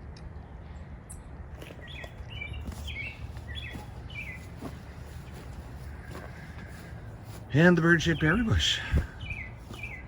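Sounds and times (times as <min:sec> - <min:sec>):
songbird chirping: 0:00.2 - 0:10.0.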